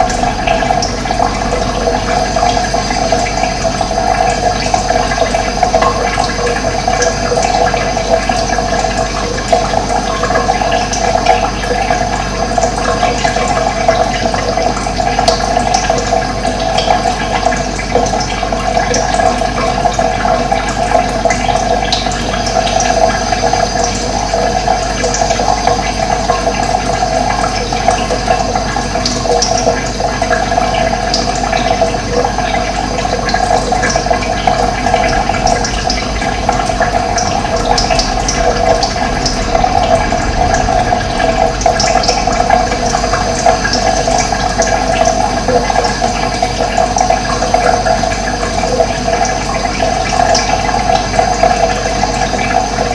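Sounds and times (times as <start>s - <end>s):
running water rushing: 0.0s - 52.9s.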